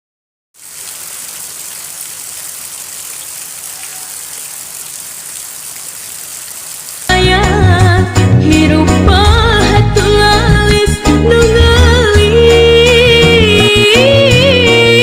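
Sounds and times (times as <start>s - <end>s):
rain pouring: 0.6s - 7.9s.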